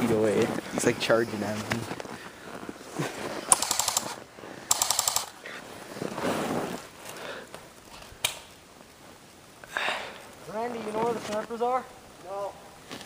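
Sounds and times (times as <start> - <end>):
airsoft gun rapid fire: 3.5 - 5.4.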